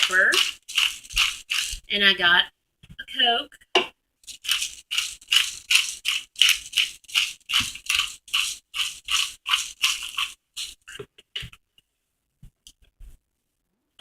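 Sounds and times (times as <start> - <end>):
pepper shaker rattling: 0.0 - 1.9, 4.2 - 11.0.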